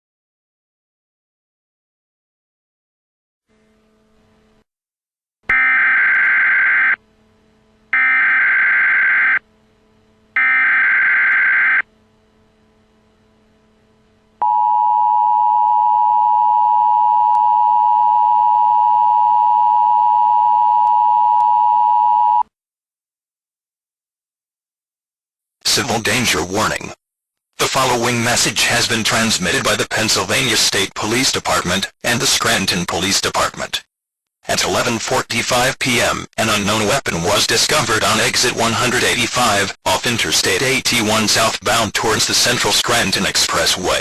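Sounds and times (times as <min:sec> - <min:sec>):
screeching data bursts: 0:08.0 - 0:09.4.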